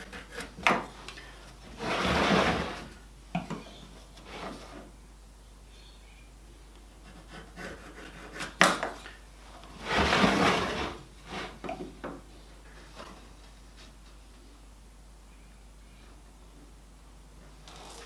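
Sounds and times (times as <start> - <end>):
wood scraping against wood: 0.0 - 3.0, 3.6 - 4.9, 7.0 - 11.8.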